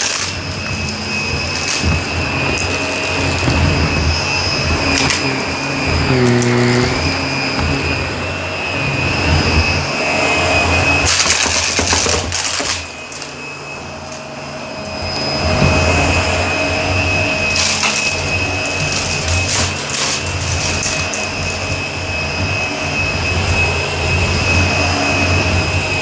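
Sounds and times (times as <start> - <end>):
debris rattling in vacuum: 0.0 - 26.0
vacuum cleaner motor whine: 0.0 - 26.0.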